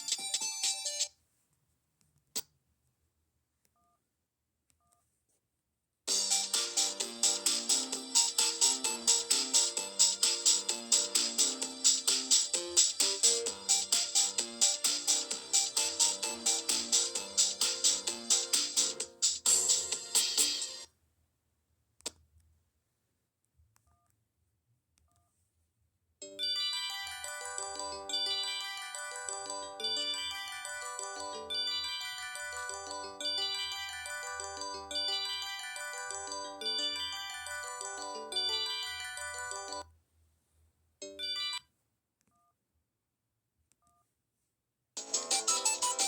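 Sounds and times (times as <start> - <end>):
ringtone melody: 0.0 - 1.1, 6.1 - 20.9, 26.2 - 39.8, 41.0 - 41.6, 45.0 - 46.0.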